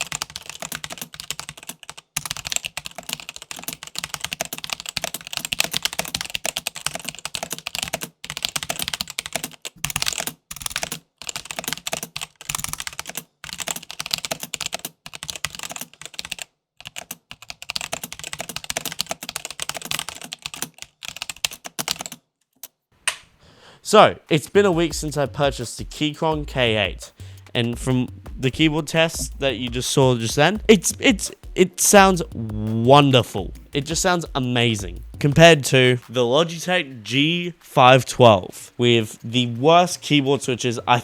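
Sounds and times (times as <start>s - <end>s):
mechanical keyboard typing: 0.0s - 22.8s.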